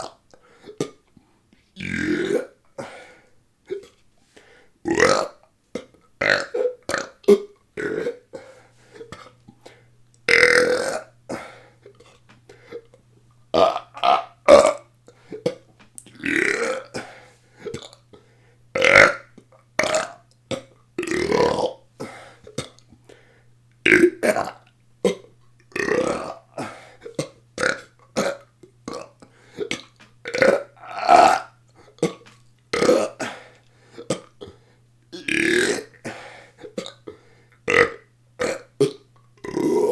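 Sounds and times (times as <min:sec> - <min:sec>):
person burping: 0:00.0 - 0:01.0, 0:01.8 - 0:02.9, 0:04.9 - 0:08.4, 0:10.3 - 0:12.2, 0:13.6 - 0:18.0, 0:18.8 - 0:22.8, 0:23.8 - 0:37.0, 0:37.7 - 0:39.9.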